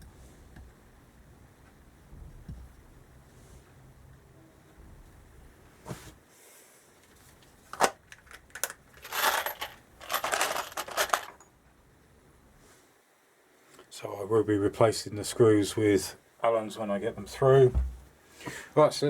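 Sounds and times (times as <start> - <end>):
small metal parts clinking: 7.8 - 11.5.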